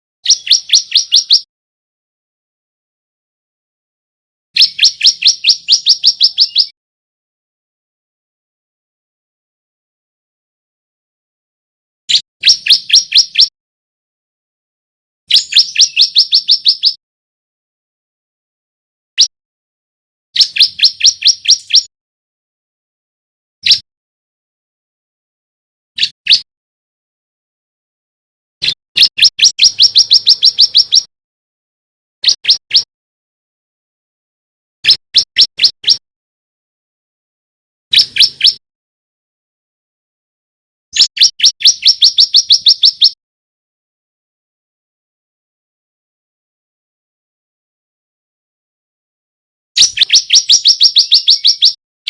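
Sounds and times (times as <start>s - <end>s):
bird sharp chirps: 0.2s - 1.5s, 4.6s - 6.8s, 12.1s - 13.5s, 15.3s - 17.0s, 20.4s - 21.9s, 23.6s - 23.8s, 26.0s - 26.5s, 28.6s - 31.1s, 32.2s - 32.9s, 34.8s - 36.0s, 37.9s - 38.6s, 41.0s - 43.2s, 49.8s - 51.8s.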